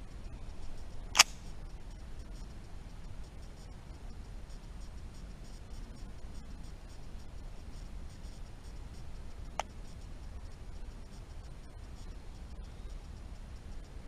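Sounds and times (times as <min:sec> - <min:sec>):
sharp click: 0:01.1 - 0:01.6.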